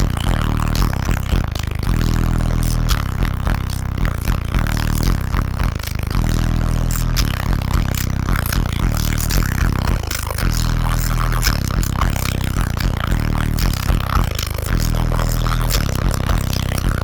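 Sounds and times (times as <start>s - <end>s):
subwoofer playing heavy bass notes: 0.0s - 17.0s
sharp clicks: 7.1s - 10.5s.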